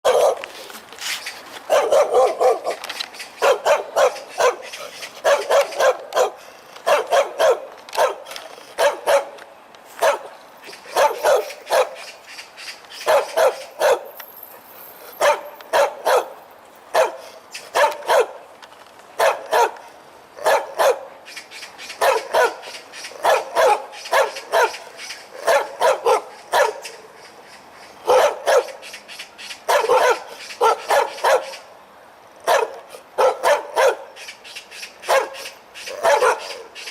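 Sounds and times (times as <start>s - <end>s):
dog barking loudly: 0.0s - 0.5s, 1.7s - 2.8s, 3.4s - 9.4s, 10.0s - 12.2s, 13.0s - 14.2s, 15.1s - 18.5s, 19.2s - 21.2s, 22.0s - 27.0s, 28.0s - 28.8s, 29.6s - 31.7s, 32.4s - 34.2s, 35.0s - 36.9s.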